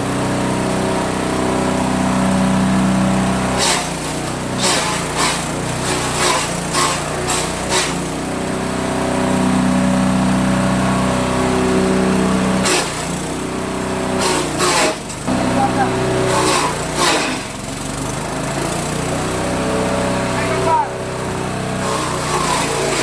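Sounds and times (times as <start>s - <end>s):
small engine running chopper: 0.0s - 23.0s.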